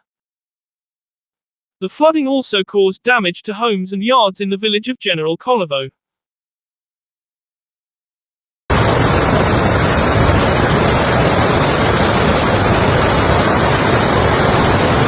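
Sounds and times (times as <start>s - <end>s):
floodwater rushing: 8.7s - 15.0s.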